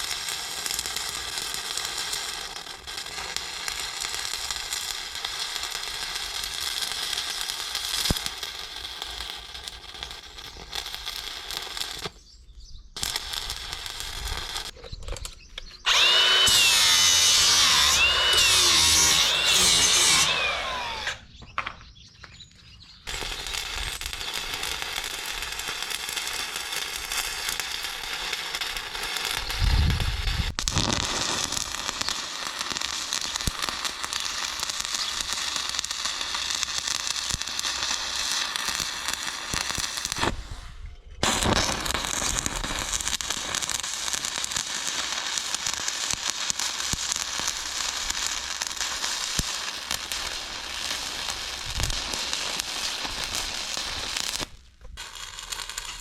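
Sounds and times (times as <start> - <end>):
arc welding crackle and sizzle: 0.0 - 21.4, 22.9 - 56.0.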